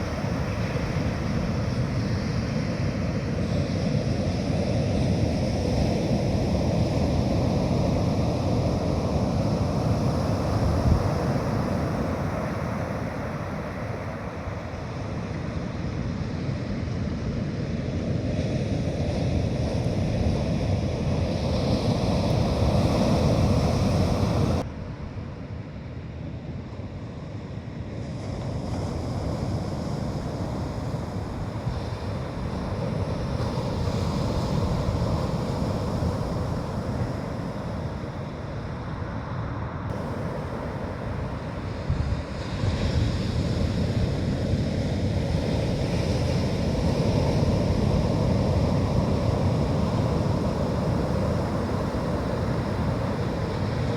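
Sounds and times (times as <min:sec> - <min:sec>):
wind on microphone: 0:00.0 - 0:16.6, 0:39.9 - 0:53.9
sea surf washing on beach: 0:00.0 - 0:24.7, 0:27.2 - 0:53.9.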